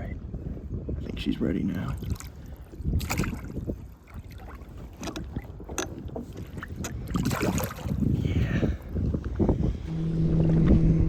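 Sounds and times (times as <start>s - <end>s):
wind rumble: 0.0s - 11.0s
water lapping: 0.4s - 10.1s
knocks and clicks on hull: 2.9s - 8.0s.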